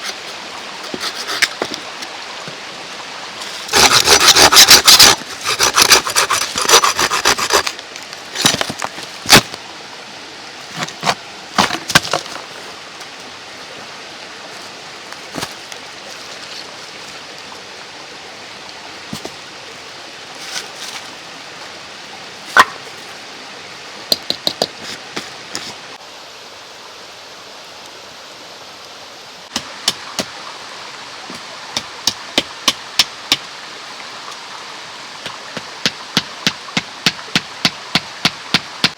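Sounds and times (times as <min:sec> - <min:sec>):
hand saw cutting wood: 0:00.0 - 0:01.8, 0:03.4 - 0:07.8, 0:08.4 - 0:09.5
mountain stream rushing: 0:00.0 - 0:38.9
wood knocking and clicking: 0:24.1 - 0:24.8.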